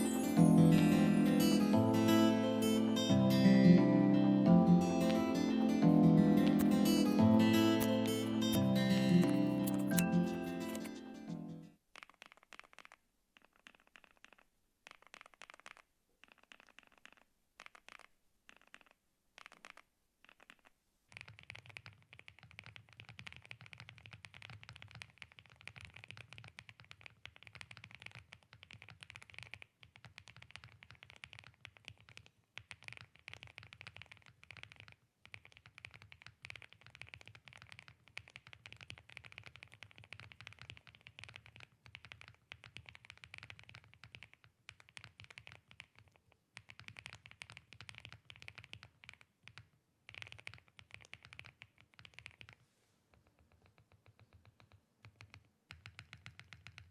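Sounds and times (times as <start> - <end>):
mechanical keyboard typing: 6.4 - 11.0, 19.4 - 52.6, 53.2 - 56.9.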